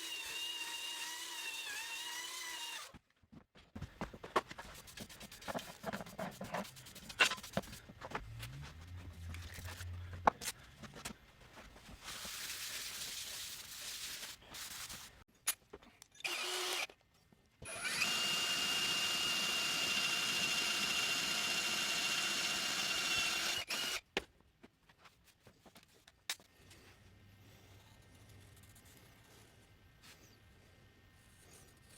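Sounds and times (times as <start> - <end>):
power drill whining: 0.0 - 2.9, 16.2 - 16.9, 17.6 - 24.0.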